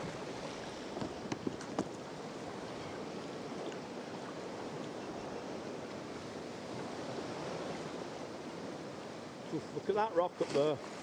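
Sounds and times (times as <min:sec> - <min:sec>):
water rushing around a kayak: 0:00.0 - 0:11.0.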